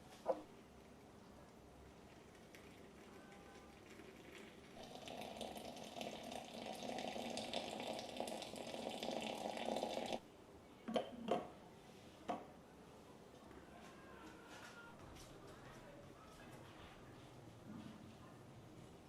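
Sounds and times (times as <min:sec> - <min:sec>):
water running from a tap: 0:03.7 - 0:10.2.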